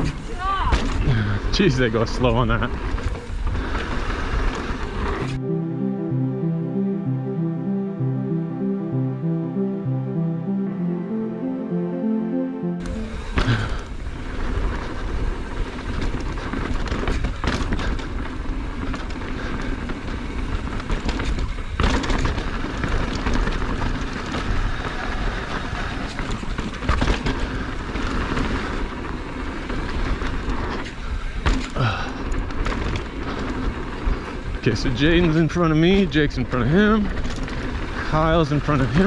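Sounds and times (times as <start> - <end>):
background music: 5.4 - 13.8.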